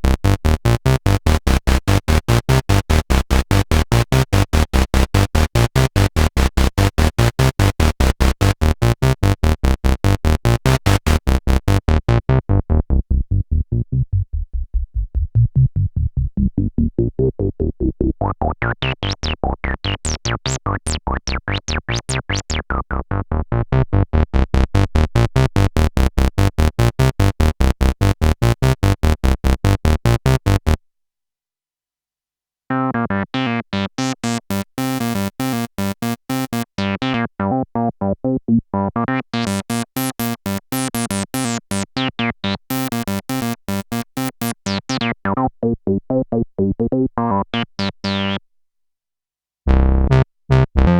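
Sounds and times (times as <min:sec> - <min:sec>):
synthesizer bass sequence: 0:01.3 - 0:30.7, 0:49.7 - 0:50.9.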